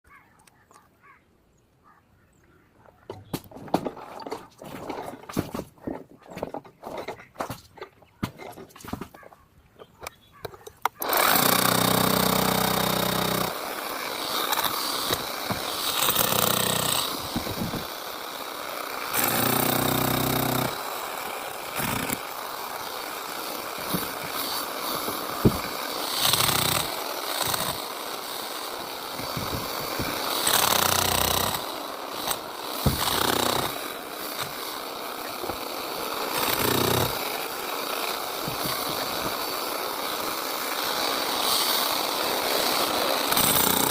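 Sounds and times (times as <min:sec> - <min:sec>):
power tool on concrete: 0:09.8 - 0:43.9.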